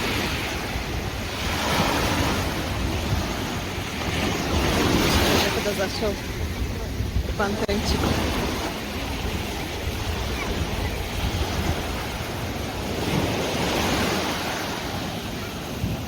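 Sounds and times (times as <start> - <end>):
sea waves washing and splashing: 0.0 - 16.0
wind buffeting microphone: 0.0 - 16.0.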